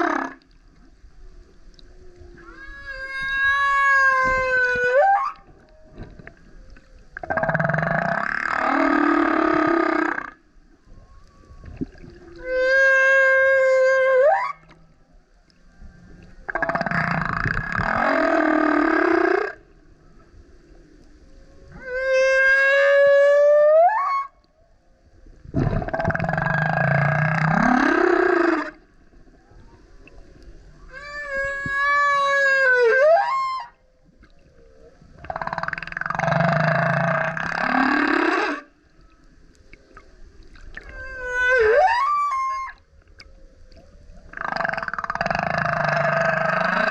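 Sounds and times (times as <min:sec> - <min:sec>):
whale moan sweeping up: 0:01.9 - 0:07.4, 0:20.8 - 0:24.4, 0:30.8 - 0:33.8, 0:40.8 - 0:42.9
rough buzzing whale song: 0:15.8 - 0:24.5, 0:25.6 - 0:46.9.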